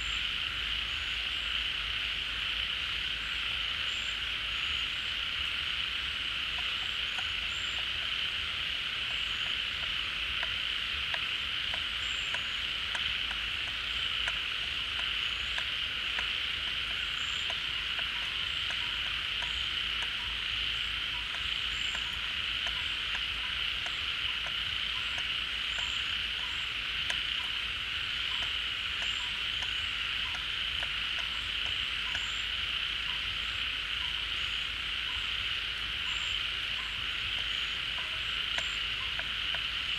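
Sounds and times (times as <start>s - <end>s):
frogs chorus: 0.0s - 39.9s
faint ticks: 6.5s - 8.2s, 9.0s - 27.6s, 28.2s - 32.4s, 36.0s - 39.9s.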